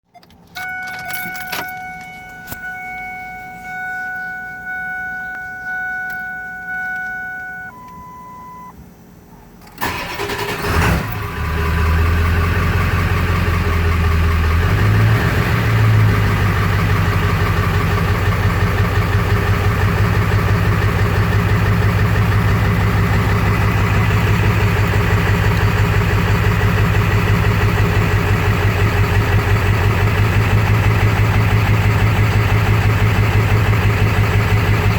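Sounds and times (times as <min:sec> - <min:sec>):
car electronic warning tone: 0:00.2 - 0:08.8
short high beep: 0:00.6 - 0:08.7
engine cranking and idling roughly: 0:09.8 - 0:34.9.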